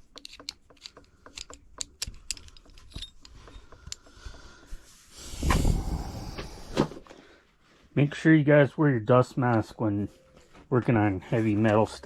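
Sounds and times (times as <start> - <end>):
metal parts clinking: 0.0 - 4.1.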